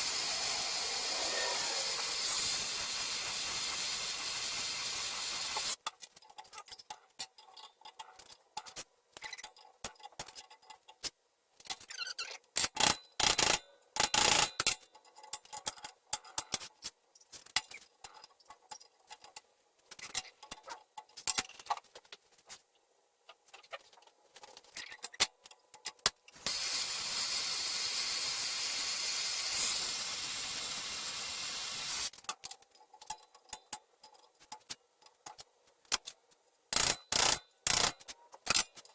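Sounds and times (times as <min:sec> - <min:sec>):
steady hiss: 0:00.0 - 0:05.8, 0:26.4 - 0:32.1.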